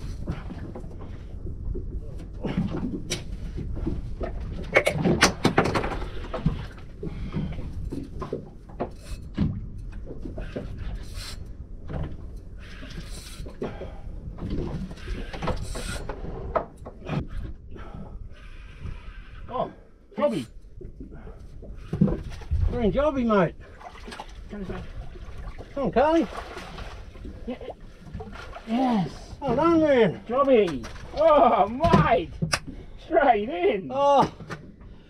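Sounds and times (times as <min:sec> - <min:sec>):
gear clattering aboard a boat: 0:00.0 - 0:35.0.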